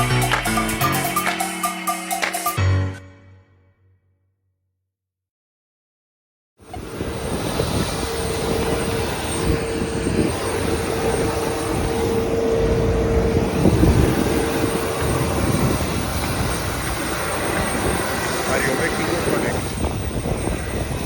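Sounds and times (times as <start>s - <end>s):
thin high whine: 0.0s - 3.3s, 6.6s - 21.0s
airliner engine rumble: 6.7s - 21.0s
droning tone: 6.8s - 18.5s.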